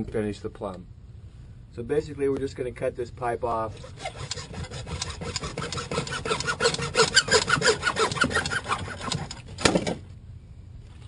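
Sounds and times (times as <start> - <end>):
hand saw cutting plastic pipe: 3.7 - 9.9.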